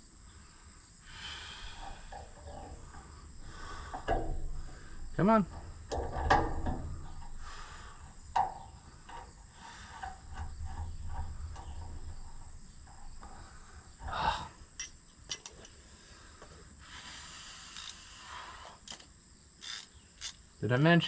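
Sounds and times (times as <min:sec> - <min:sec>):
crickets droning: 0:00.0 - 0:21.0
tools and metal parts clinking: 0:04.0 - 0:07.4, 0:14.8 - 0:15.8.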